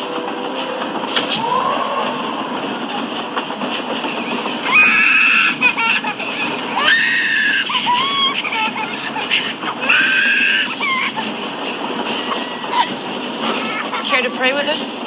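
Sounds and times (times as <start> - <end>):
train rumbling: 0.0 - 15.0
baby crying: 4.6 - 11.3, 12.7 - 14.1.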